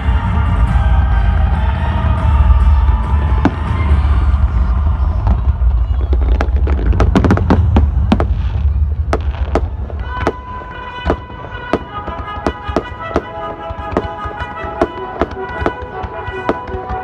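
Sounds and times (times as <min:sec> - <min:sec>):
low rumble: 0:00.0 - 0:10.6
fireworks cracking and banging: 0:02.8 - 0:17.0
music with held notes: 0:09.2 - 0:17.0.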